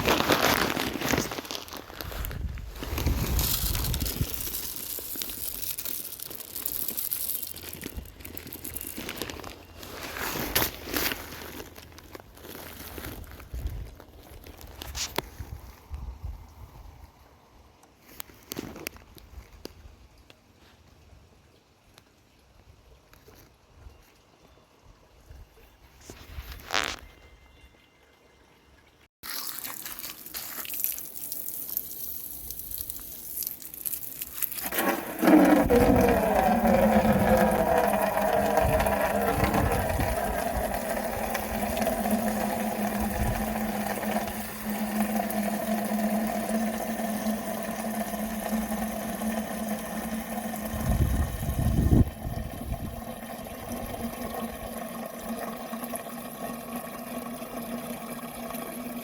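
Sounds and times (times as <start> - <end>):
water running: 29.2 - 59.0.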